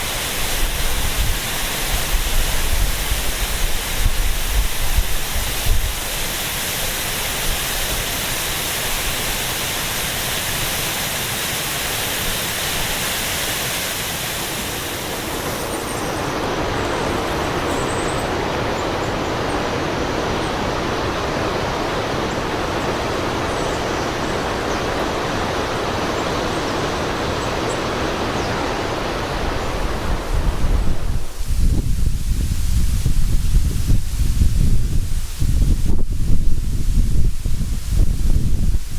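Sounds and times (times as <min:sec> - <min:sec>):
waterfall rushing: 0:00.0 - 0:36.1.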